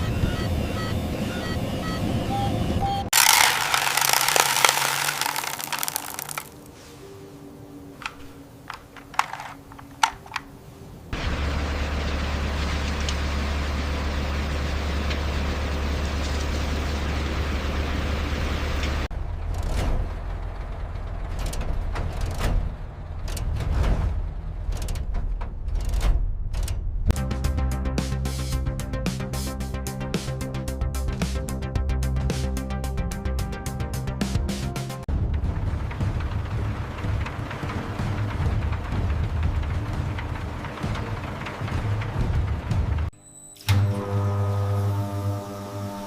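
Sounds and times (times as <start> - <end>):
small clicks and gritty rustling: 3.2 - 6.7, 8.0 - 10.5
clicking and scraping knocks: 8.0 - 10.5.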